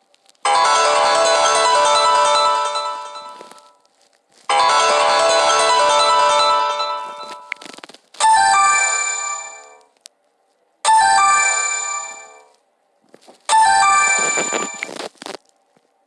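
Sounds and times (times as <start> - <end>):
bright phone chime: 0.5 - 3.8, 4.5 - 9.8, 10.9 - 12.5, 13.5 - 15.0.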